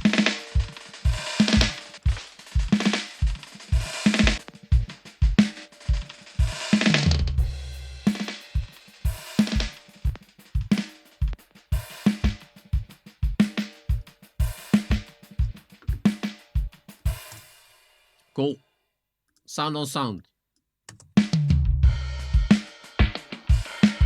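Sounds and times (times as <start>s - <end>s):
cymbal washes: 0.0s - 18.2s
drum beat with echo: 0.0s - 18.2s, 21.2s - 24.0s.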